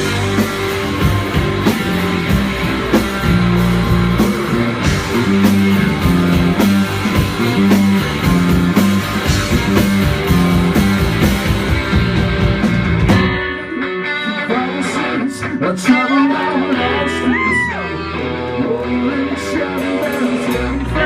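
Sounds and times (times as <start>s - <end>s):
bass riff: 0.0s - 21.0s
drums: 0.0s - 21.0s
electric guitar: 0.0s - 21.0s.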